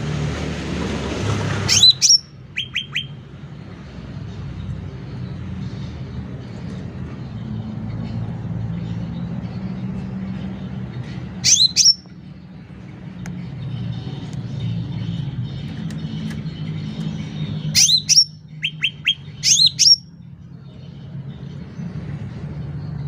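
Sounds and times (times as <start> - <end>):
bird calling with sweeping notes: 1.6 - 3.4, 11.3 - 12.4, 14.2 - 20.2.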